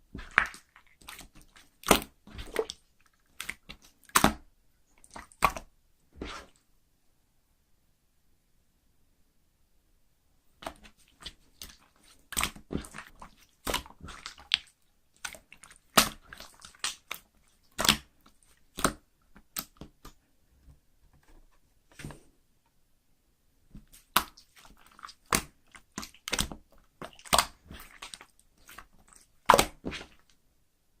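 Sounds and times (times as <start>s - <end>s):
slime wet clicks and crackles: 10.6s - 20.2s, 24.0s - 30.3s.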